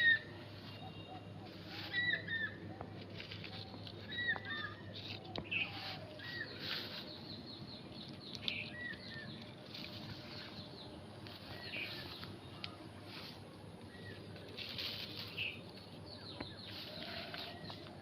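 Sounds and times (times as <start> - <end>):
small bird chirping: 0.0 - 18.0
plastic rustling and crinkling: 2.8 - 7.2, 14.2 - 16.0.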